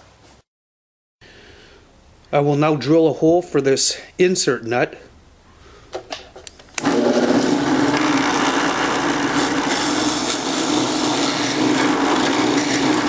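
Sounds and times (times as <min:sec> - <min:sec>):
drill click: 0:06.8 - 0:13.0
power drill boring into wood: 0:06.8 - 0:13.0.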